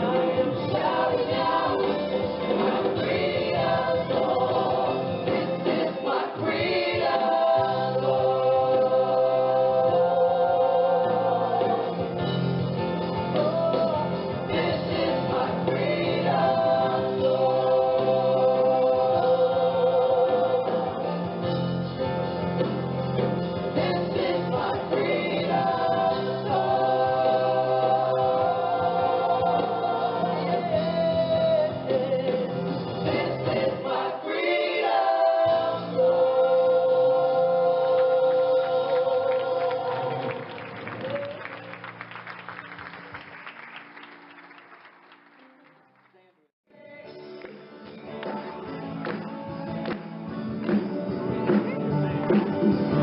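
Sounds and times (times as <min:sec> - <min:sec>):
choir singing: 0:00.0 - 0:12.6, 0:13.3 - 0:21.4, 0:23.6 - 0:40.7.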